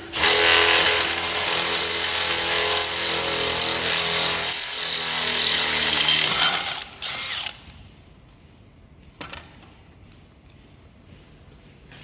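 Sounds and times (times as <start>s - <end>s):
drill running: 0.0s - 7.6s.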